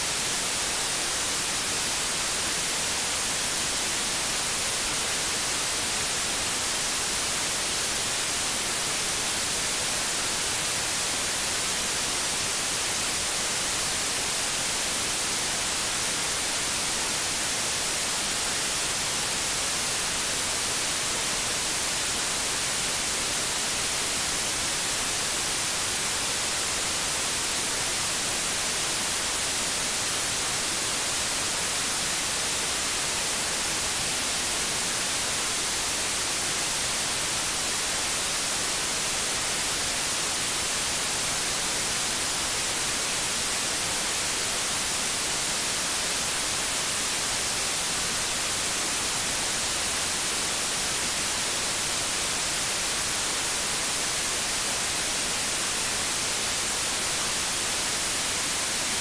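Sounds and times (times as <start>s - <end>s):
steady white noise hiss: 0.0s - 59.0s.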